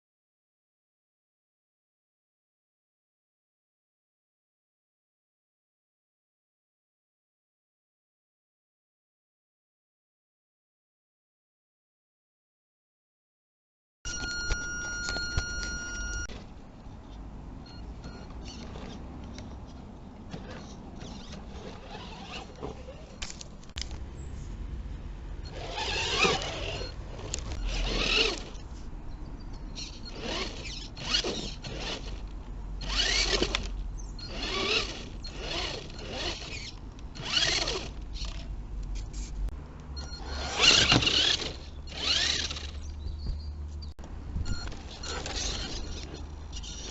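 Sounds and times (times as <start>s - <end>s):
electric motor whining: 25.5s - 28.6s, 29.8s - 38.4s, 40.0s - 42.9s.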